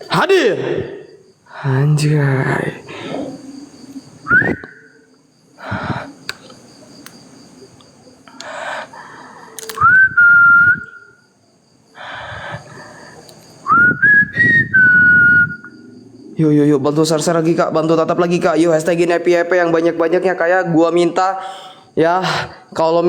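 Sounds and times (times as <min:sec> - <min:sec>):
breathy hisses: 0:02.5 - 0:04.9, 0:05.5 - 0:07.0, 0:08.2 - 0:11.1, 0:11.9 - 0:16.4, 0:21.4 - 0:22.8
person whistling: 0:04.3 - 0:05.0, 0:09.8 - 0:11.2, 0:13.7 - 0:15.8.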